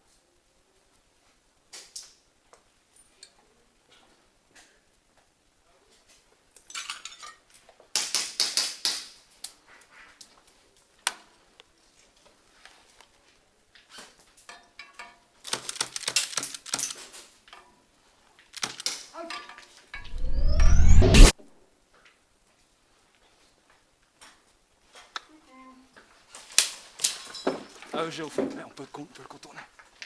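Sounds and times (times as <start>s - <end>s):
plastic and metal gear clicking: 15.5s - 17.1s
loud low rumble: 20.0s - 21.3s
short rising whine: 20.0s - 21.3s.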